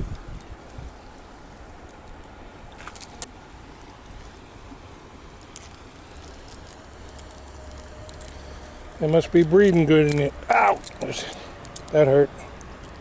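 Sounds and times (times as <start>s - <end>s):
metal fishing lure clinking: 9.4s - 12.1s.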